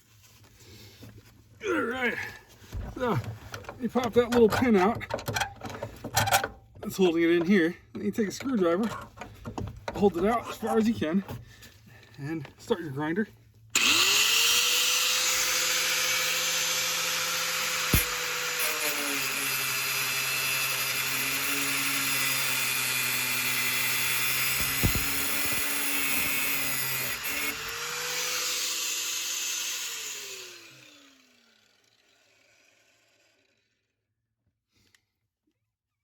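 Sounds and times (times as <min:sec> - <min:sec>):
angle grinder cutting metal: 0:13.8 - 0:33.6
sharp knocks: 0:24.5 - 0:26.3.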